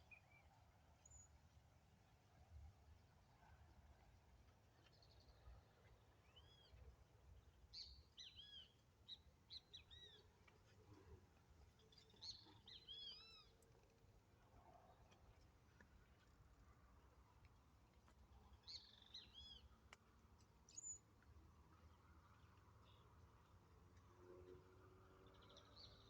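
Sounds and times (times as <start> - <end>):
bird chirping song: 4.9 - 10.3, 11.8 - 13.6, 18.5 - 19.8, 20.7 - 21.1, 25.2 - 26.0.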